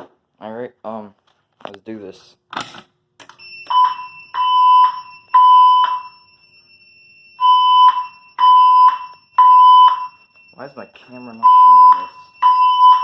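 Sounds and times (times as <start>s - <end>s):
fire alarm beeps: 3.3s - 13.0s.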